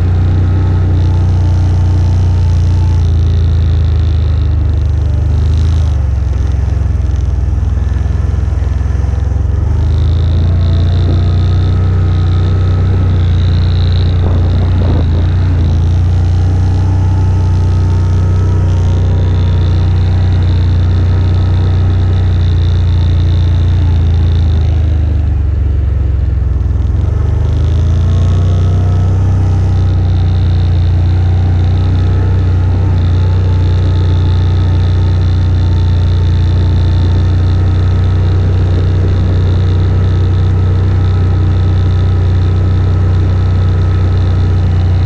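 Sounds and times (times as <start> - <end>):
quad bike engine running: 0.0 - 45.0.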